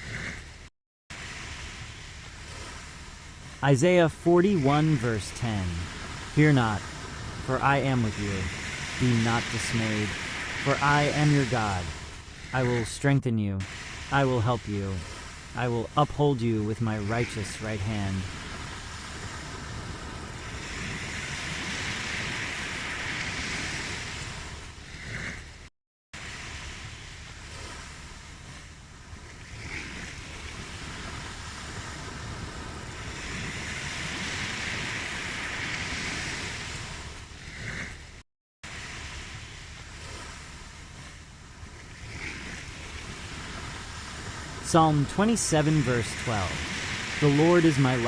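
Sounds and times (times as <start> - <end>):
ocean waves washing ashore: 0.0 - 48.0.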